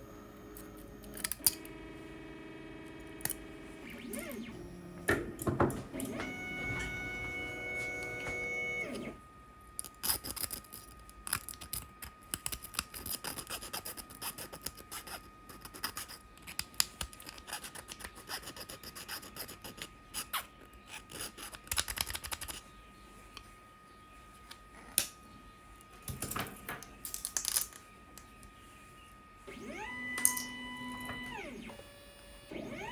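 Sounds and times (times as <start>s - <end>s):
plastic clicking snapping and scraping: 9.8s - 14.9s, 15.5s - 22.6s.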